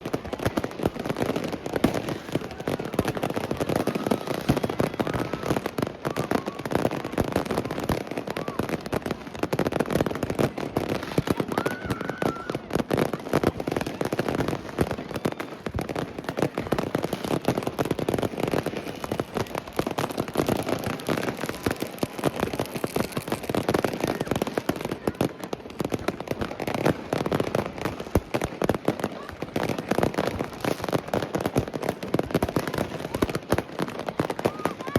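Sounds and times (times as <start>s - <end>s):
fireworks crackling and banging: 0.0s - 34.9s
firework whistles: 1.8s - 7.3s, 10.9s - 12.7s.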